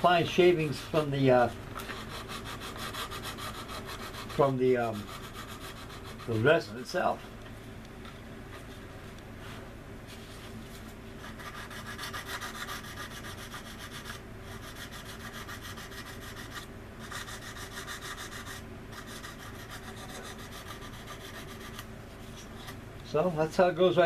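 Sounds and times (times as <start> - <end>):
sanding stick rubbing: 1.9 - 6.4, 11.2 - 21.8.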